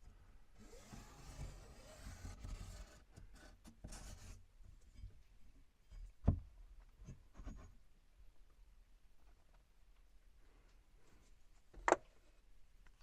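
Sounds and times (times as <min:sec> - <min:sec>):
pencil scratching on wood: 0:00.6 - 0:04.4.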